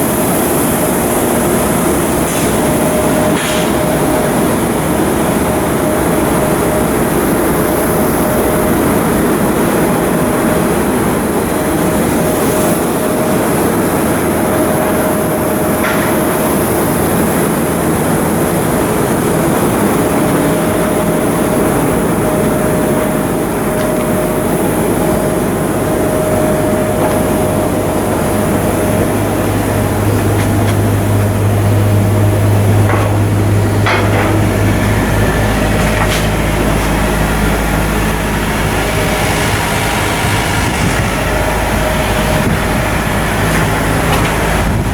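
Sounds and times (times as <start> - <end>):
shipyard machinery din: 0.0 - 44.9
low hum: 14.2 - 44.9.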